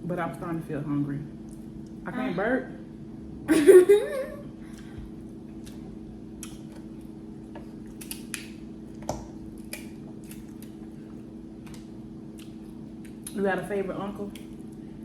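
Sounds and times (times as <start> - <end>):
steady low hum: 0.0 - 15.0
shells cracking and chewing: 4.7 - 13.4.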